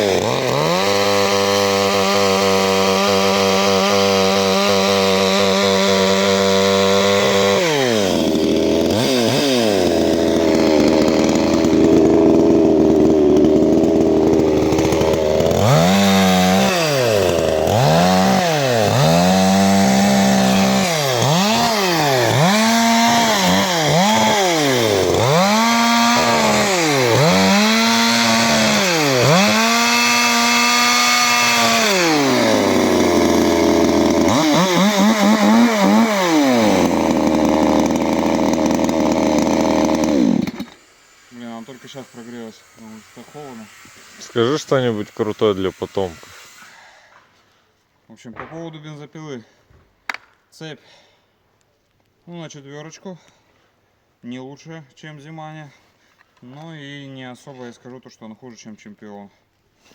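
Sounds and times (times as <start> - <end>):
chainsaw engine revving: 0.0 - 46.9.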